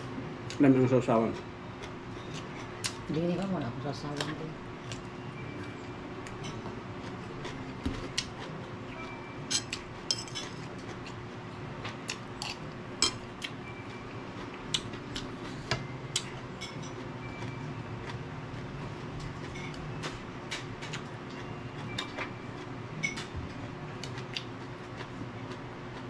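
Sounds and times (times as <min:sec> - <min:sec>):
utensils clinking on dishware: 0:06.4 - 0:06.6, 0:09.5 - 0:10.7, 0:12.4 - 0:13.2, 0:16.2 - 0:17.1.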